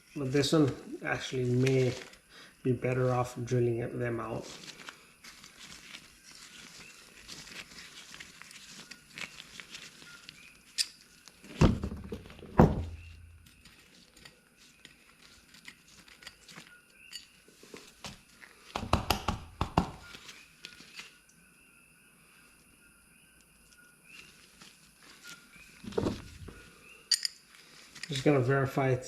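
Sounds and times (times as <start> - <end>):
light clicks of metal tools: 13.6 - 17.6, 27.0 - 28.4.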